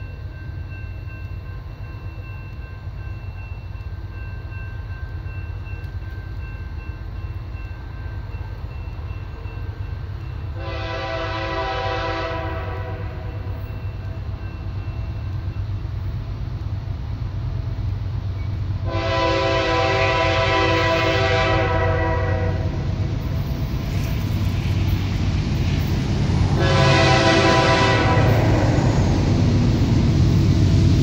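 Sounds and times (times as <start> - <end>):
freight train rumbling past: 0.0 - 31.0
locomotive horn chord: 10.6 - 13.4, 18.8 - 22.9, 26.5 - 28.7.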